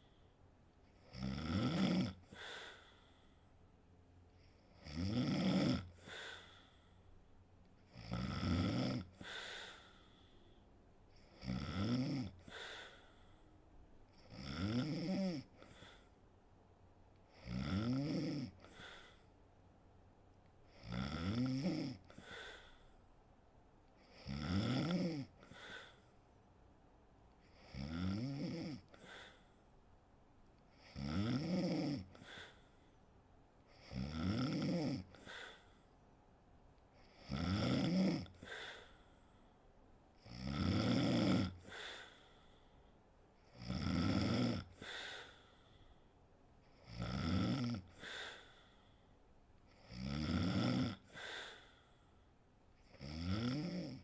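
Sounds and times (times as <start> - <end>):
woman snoring: 1.0 - 2.9, 4.8 - 6.6, 7.9 - 10.0, 11.2 - 13.0, 14.1 - 16.0, 17.4 - 19.2, 20.7 - 22.7, 24.1 - 26.0, 27.5 - 29.4, 30.7 - 32.6, 33.7 - 35.6, 37.0 - 39.0, 40.2 - 42.2, 43.4 - 45.4, 46.8 - 48.6, 49.7 - 51.7, 52.9 - 54.0
breath sound: 22.1 - 23.1, 38.4 - 39.7, 41.6 - 43.0, 44.8 - 46.2, 47.9 - 49.2, 51.1 - 52.4.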